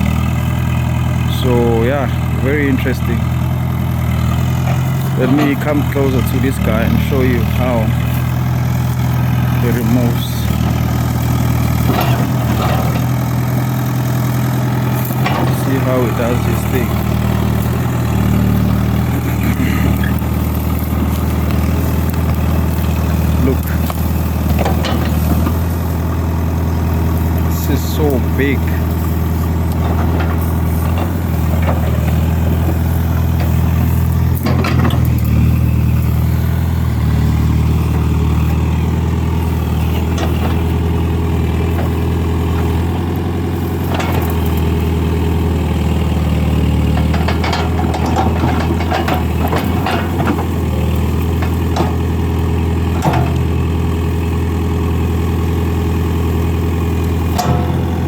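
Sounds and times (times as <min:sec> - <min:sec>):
diesel engine running: 0:00.0 - 0:58.0
knocks and clicks from digging: 0:11.7 - 0:13.2, 0:14.9 - 0:15.7, 0:19.9 - 0:25.6, 0:29.6 - 0:35.3, 0:43.8 - 0:44.7, 0:46.9 - 0:52.1, 0:53.0 - 0:53.5, 0:57.3 - 0:58.0.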